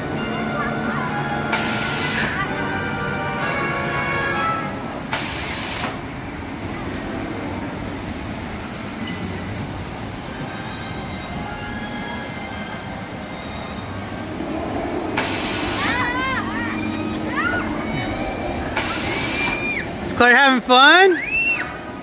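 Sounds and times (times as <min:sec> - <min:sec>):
ride machinery rumbling: 0:00.0 - 0:22.0
short hiss: 0:05.1 - 0:06.1
faint high whines: 0:08.9 - 0:22.0.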